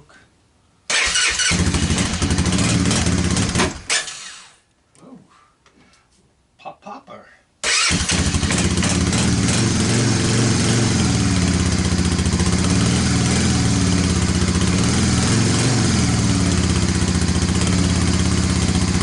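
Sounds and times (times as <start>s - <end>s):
engine idling: 16.1s - 19.0s.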